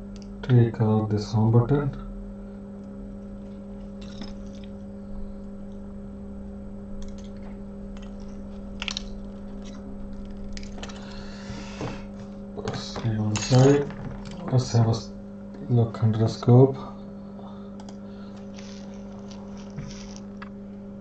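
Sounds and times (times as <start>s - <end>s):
steady electrical hum: 0.0s - 21.0s
small tools clicking and scraping: 3.4s - 4.8s, 7.0s - 11.2s, 18.4s - 20.5s.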